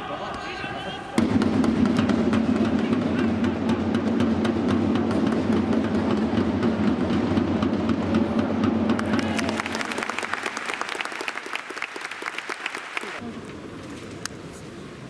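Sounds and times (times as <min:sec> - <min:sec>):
drum beat: 0:01.2 - 0:09.3
stadium crowd clapping: 0:08.9 - 0:13.2.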